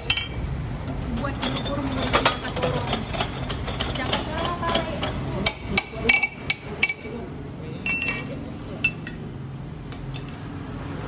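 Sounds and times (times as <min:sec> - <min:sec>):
metal tools clinking on lathe: 0:00.0 - 0:00.4, 0:01.2 - 0:07.1, 0:07.8 - 0:09.3.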